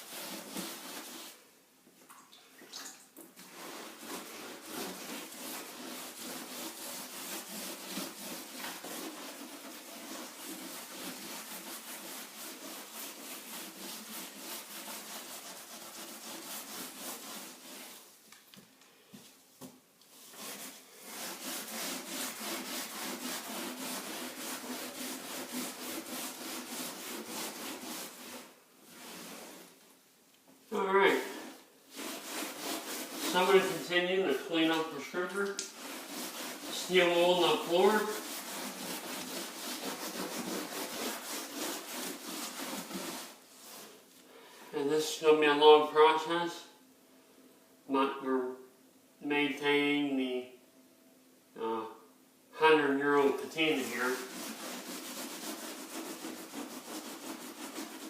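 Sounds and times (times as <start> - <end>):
steel wool scrubbing a wooden floor: 0.0 - 1.5, 3.4 - 18.2, 20.1 - 29.8, 30.7 - 44.2, 53.1 - 58.0.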